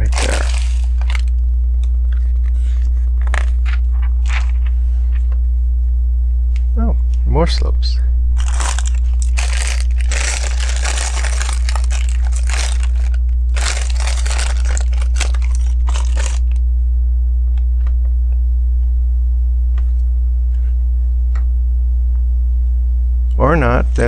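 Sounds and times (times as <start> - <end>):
plastic bricks rustling and rattling: 0.0 - 1.4, 2.1 - 4.7, 8.4 - 16.6
mains hum: 0.0 - 24.0.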